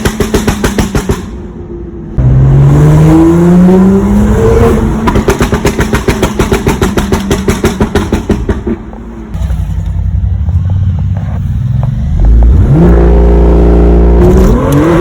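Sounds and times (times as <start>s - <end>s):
car engine revving hard: 2.2s - 5.6s, 12.3s - 15.0s.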